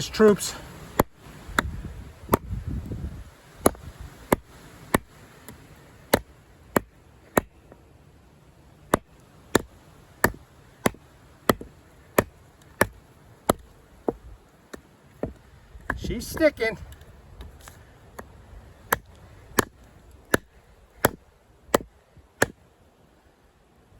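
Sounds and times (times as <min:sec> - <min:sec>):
blade chopping into wood: 0:00.9 - 0:02.6, 0:03.6 - 0:07.6, 0:08.9 - 0:16.5, 0:18.9 - 0:22.6.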